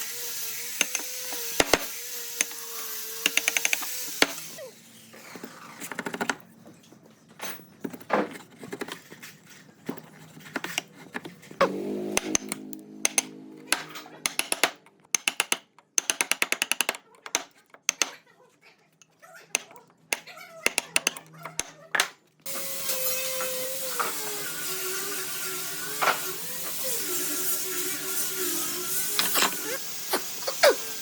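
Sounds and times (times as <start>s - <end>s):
power tool motor cutting wood: 0.0s - 5.8s, 11.6s - 14.7s, 22.5s - 31.0s
tapping and clicking: 3.2s - 4.4s, 12.1s - 18.2s, 19.5s - 22.2s.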